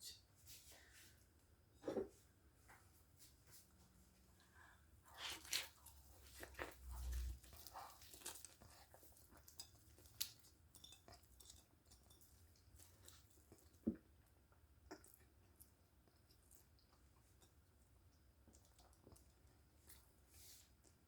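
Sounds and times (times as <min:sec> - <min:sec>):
crunchy chewing: 0:05.1 - 0:14.0.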